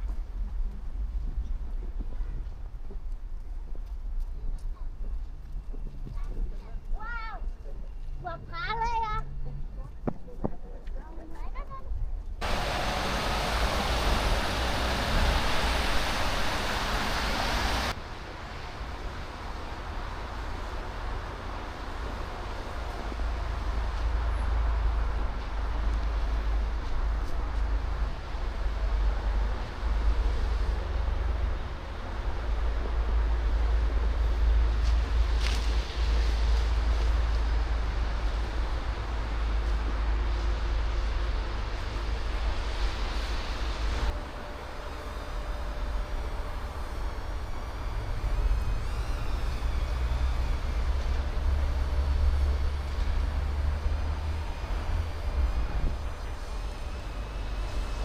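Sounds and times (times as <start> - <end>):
city traffic hiss: 12.3 - 58.0.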